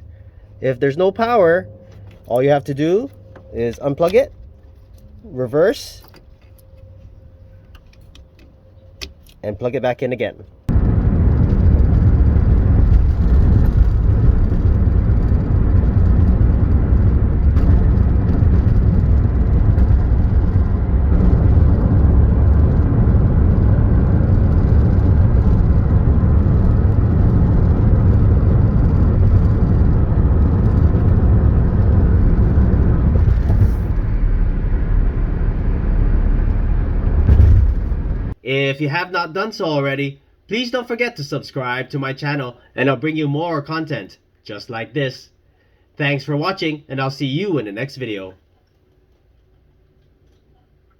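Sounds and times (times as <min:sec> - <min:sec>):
car running low rumble: 0:10.4 - 0:38.4.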